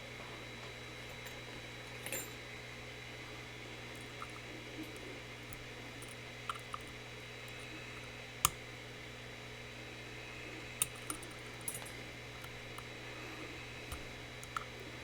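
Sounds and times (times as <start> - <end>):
background hiss and hum: 0.0 - 15.0
lock-picking tools clicking: 13.9 - 14.8.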